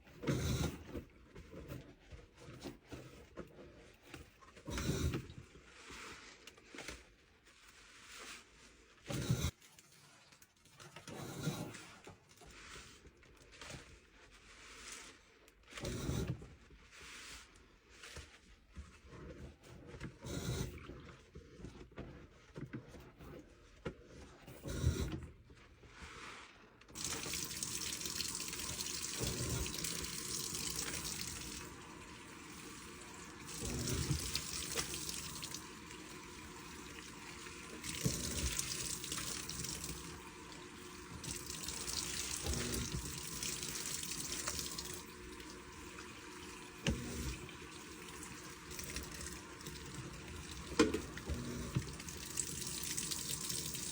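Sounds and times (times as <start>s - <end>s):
washing machine sloshing water: 26.9s - 53.9s.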